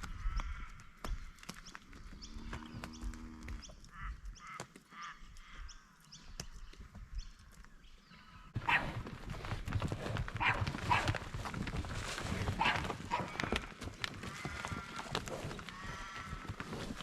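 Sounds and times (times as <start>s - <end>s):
animals calling: 7.4s - 9.0s, 12.5s - 16.8s.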